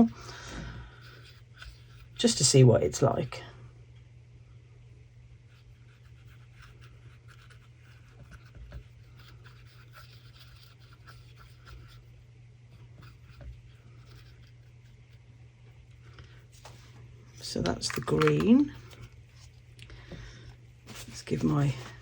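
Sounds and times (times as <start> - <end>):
steady low hum: 0.0 - 22.0
dry scratchy brushing: 0.9 - 3.1, 5.4 - 17.1, 20.8 - 22.0.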